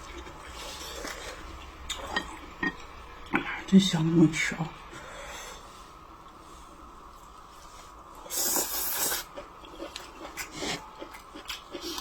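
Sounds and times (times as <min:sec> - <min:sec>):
person eating: 0:00.0 - 0:02.5, 0:08.1 - 0:12.0.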